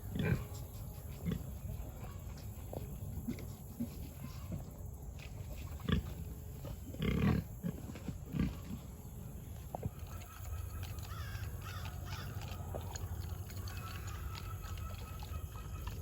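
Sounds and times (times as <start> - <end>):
pig grunting: 0.0 - 2.3, 5.6 - 8.8.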